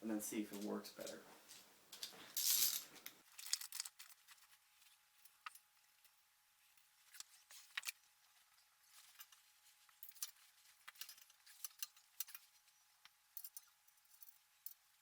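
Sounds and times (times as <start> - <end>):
small parts clicking and clinking: 0.5 - 8.0, 8.9 - 15.0.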